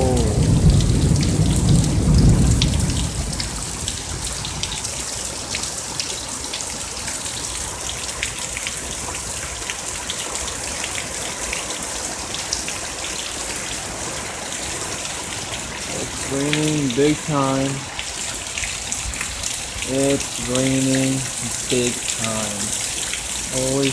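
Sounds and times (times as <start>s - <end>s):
low thunder rumble: 0.0s - 4.8s
raindrops ticking: 0.0s - 9.8s, 14.7s - 23.9s
heavy rain pouring: 0.0s - 23.9s.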